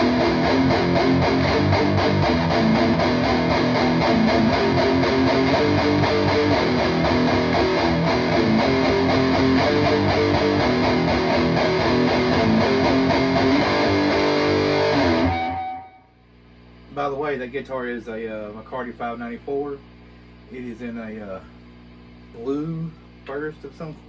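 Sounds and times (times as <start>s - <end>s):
electric guitar playing: 0.0s - 16.0s.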